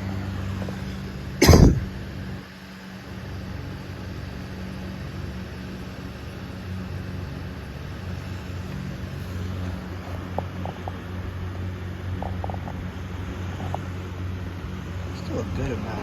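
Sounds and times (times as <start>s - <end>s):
electric fan running: 0.0s - 16.0s
loud thump: 1.4s - 1.9s.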